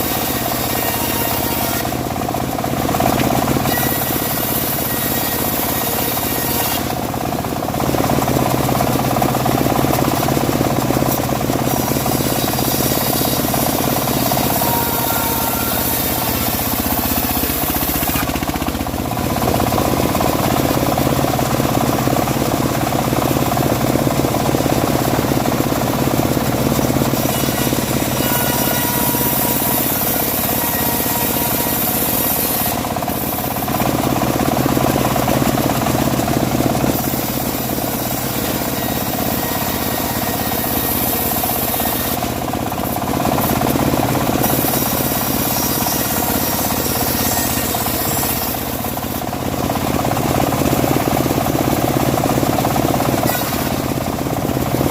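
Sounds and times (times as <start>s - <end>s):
machine hum: 0.0s - 54.9s
saw blade rasping wood: 0.0s - 54.9s.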